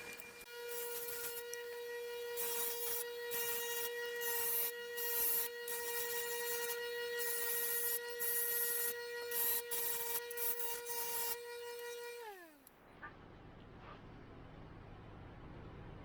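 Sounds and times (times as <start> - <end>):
power tool motor whining: 0.0 - 12.7.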